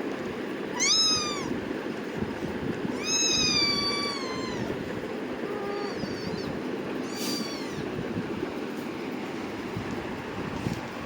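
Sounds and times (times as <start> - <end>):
kitten meowing: 0.8 - 1.6, 2.9 - 4.8, 5.4 - 7.9.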